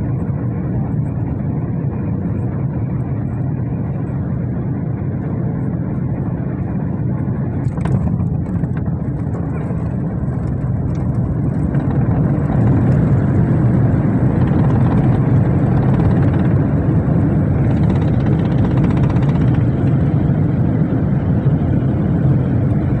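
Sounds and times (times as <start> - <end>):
airliner engines rumbling: 0.0 - 23.0.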